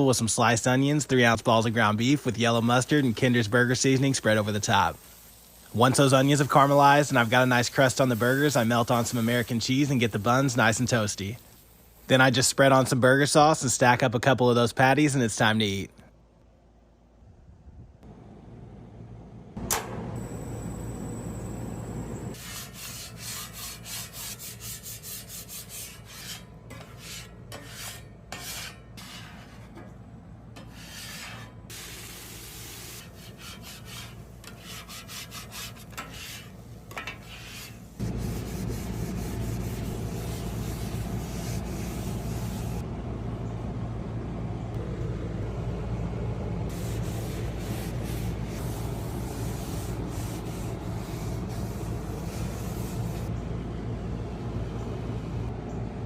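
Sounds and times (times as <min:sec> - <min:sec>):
metal spatula scraping griddle: 0:22.4 - 0:42.0.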